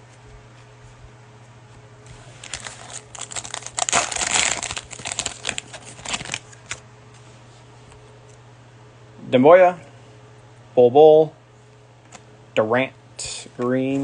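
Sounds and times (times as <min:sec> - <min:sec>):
cellophane crinkling and tearing: 0:02.1 - 0:06.8.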